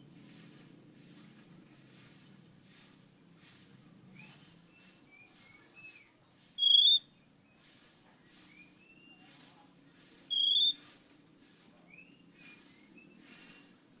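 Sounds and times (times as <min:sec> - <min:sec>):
songbird whistling: 0:04.2 - 0:07.6, 0:08.3 - 0:09.2, 0:10.3 - 0:10.9, 0:11.9 - 0:13.7.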